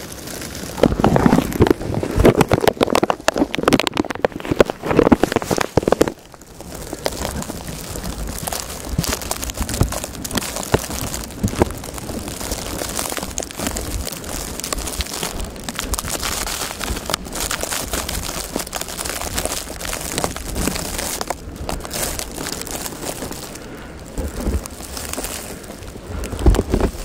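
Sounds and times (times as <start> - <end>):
dense irregular crackling: 0.0 - 27.0.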